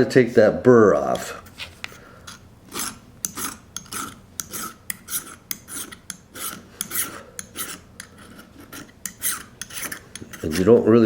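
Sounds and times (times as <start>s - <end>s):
file rasping on steel blade: 2.3s - 10.8s.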